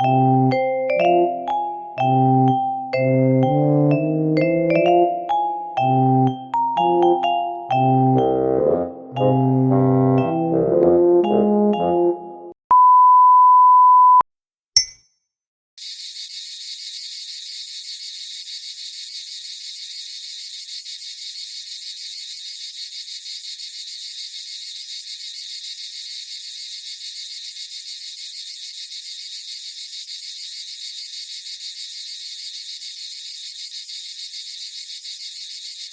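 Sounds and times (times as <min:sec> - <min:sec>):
crickets chirping: 0:15.9 - 0:35.9.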